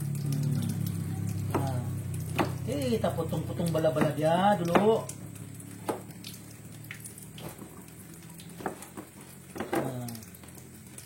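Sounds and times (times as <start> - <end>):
knife chopping on cutting board: 2.4 - 2.6, 3.9 - 5.0, 5.8 - 6.0.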